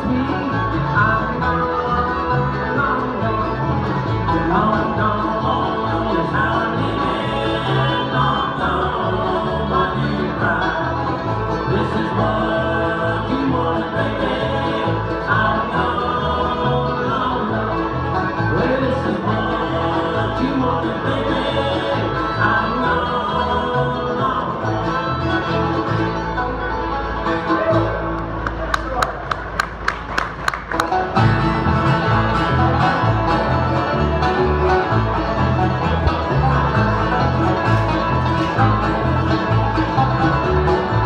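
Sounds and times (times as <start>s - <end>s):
person singing: 0.0s - 25.5s
banjo: 0.0s - 41.0s
bass line: 0.0s - 41.0s
guitar: 0.0s - 41.0s.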